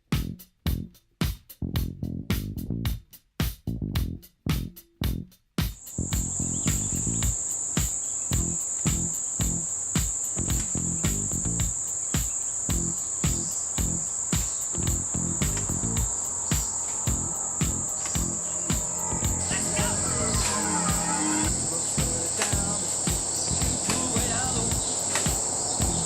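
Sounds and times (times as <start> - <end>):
regular thumps: 0.0 - 26.0
high-pitched insect buzz: 5.8 - 26.0.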